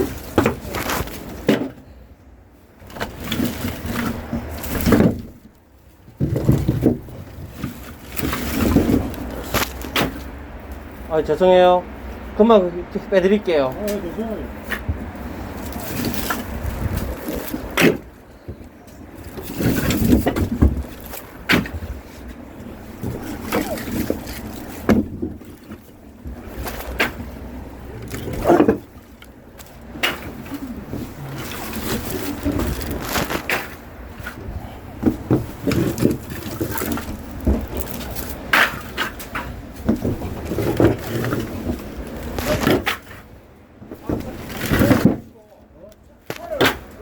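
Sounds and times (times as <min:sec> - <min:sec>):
sharp knocks and thuds: 0:00.0 - 0:01.9, 0:06.1 - 0:10.3, 0:14.7 - 0:18.7, 0:19.3 - 0:45.3
wind buffeting microphone: 0:14.2 - 0:26.6.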